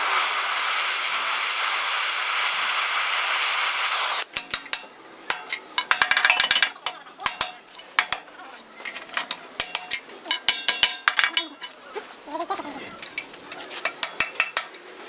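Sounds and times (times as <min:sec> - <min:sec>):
gas cutting torch hissing: 0:00.0 - 0:04.3
metallic clinks and knocks: 0:04.3 - 0:11.8.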